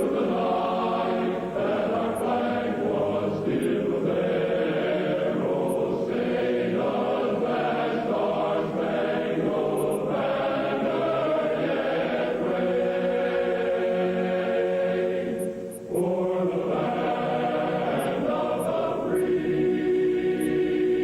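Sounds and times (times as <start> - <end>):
choir singing chant-like chords: 0.0 - 21.0.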